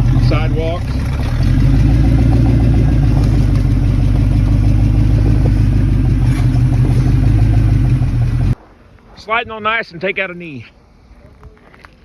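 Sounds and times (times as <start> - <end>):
car engine running: 0.0 - 8.6.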